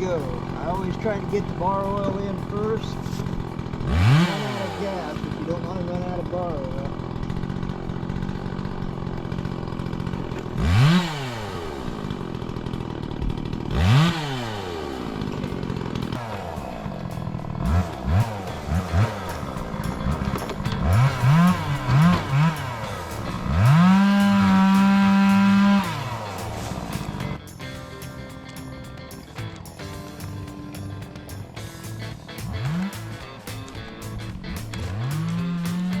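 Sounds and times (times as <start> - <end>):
chainsaw idling and revving: 0.0 - 36.0.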